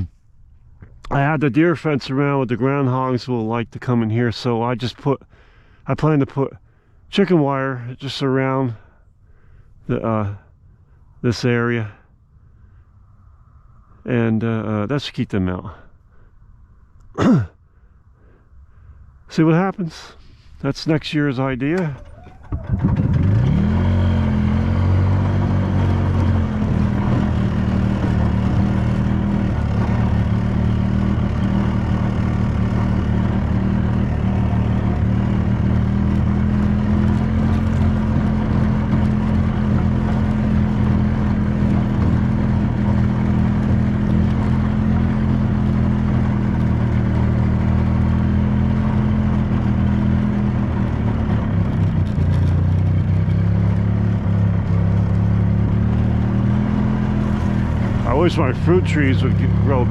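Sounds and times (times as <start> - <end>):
small vehicle engine running: 21.4 - 59.9.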